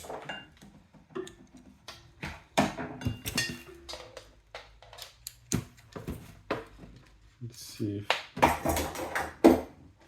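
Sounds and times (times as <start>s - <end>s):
hard objects clicking and knocking: 0.0s - 7.2s, 8.1s - 10.0s.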